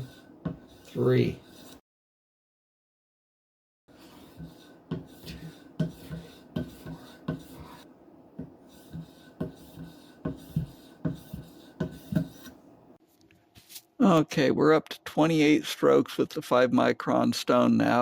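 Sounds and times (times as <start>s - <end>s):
knife rasping on sharpening stone: 4.0s - 7.9s.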